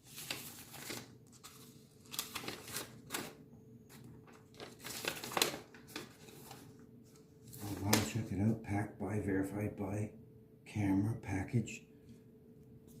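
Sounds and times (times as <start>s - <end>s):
packaging crinkling and rustling: 0.0s - 8.2s.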